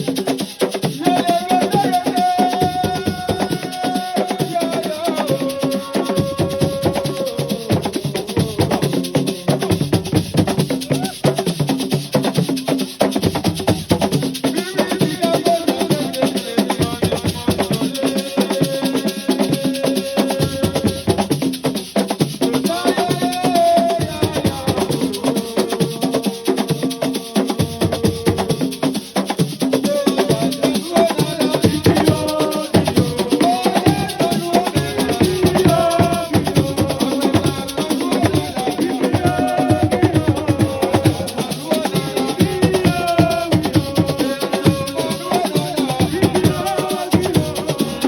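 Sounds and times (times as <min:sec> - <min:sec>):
drums and shakers rhythm: 0:00.0 - 0:48.0
person singing: 0:01.0 - 0:09.6, 0:22.6 - 0:28.5, 0:29.8 - 0:48.0.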